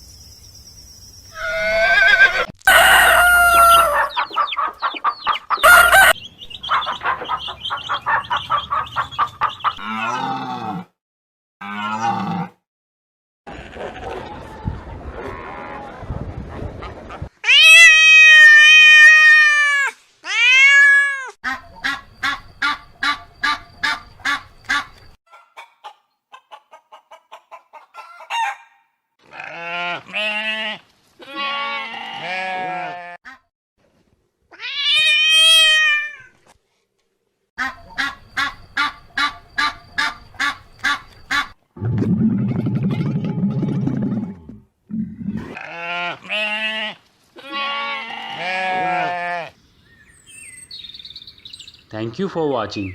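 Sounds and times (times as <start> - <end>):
farm animals calling: 1.3 - 10.9, 11.6 - 12.6, 21.4 - 33.2, 37.6 - 41.6, 45.2 - 49.6.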